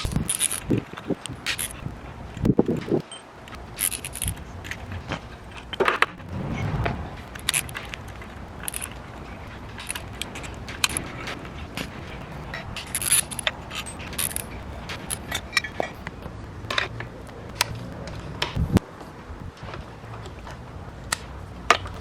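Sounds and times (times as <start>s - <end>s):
metal tools clinking and scraping: 0.3s - 0.6s, 3.8s - 4.4s, 8.6s - 8.9s, 12.8s - 16.0s.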